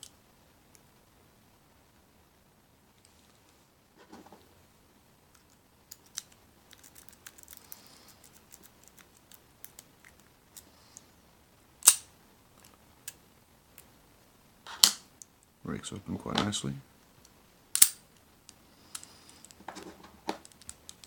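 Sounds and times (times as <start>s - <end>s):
padlock snapping open: 11.8s - 12.0s, 17.8s - 18.0s.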